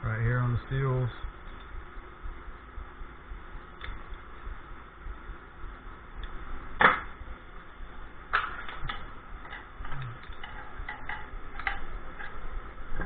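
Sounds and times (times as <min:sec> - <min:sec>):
metal parts clicking and clinking: 0:08.5 - 0:12.4.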